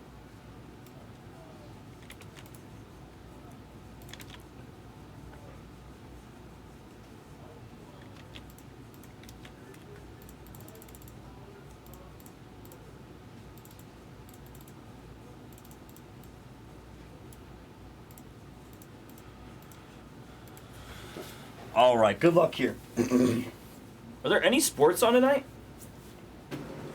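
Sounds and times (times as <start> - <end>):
low room hum: 0.0 - 26.9
keyboard typing: 2.0 - 2.6, 4.0 - 4.4, 8.0 - 11.2, 13.6 - 14.8.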